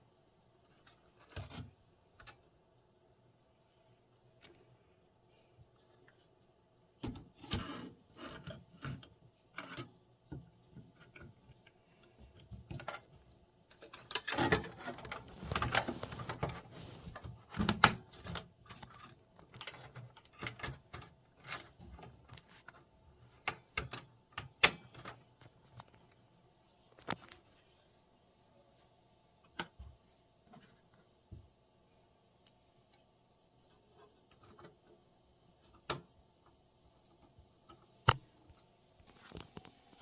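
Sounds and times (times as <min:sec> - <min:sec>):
computer hardware clicking and rattling: 0:17.4 - 0:26.0.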